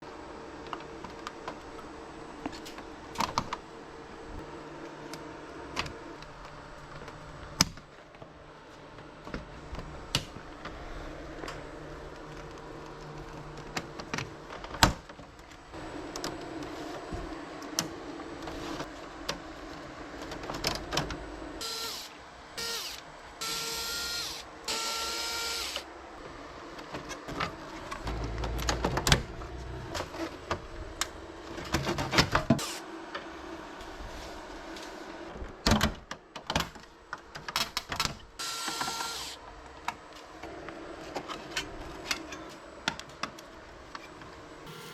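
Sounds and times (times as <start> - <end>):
electric screwdriver whirring: 21.6 - 25.8, 38.4 - 39.4.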